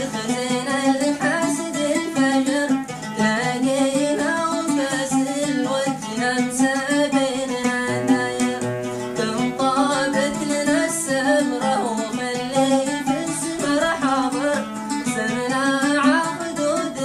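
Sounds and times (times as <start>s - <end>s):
person singing: 0.0s - 17.0s
plucked string instrument: 0.0s - 17.0s.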